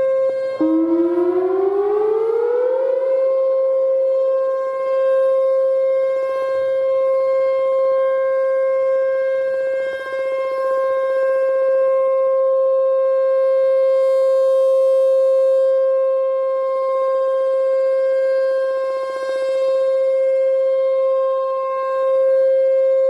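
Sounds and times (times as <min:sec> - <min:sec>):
rising lower siren tone: 0:00.0 - 0:23.0
siren steady alert tone: 0:00.0 - 0:23.0.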